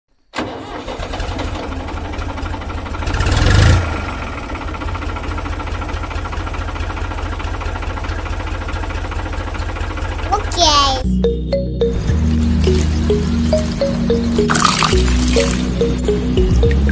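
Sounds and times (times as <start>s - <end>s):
diesel engine running: 4.2s - 10.2s.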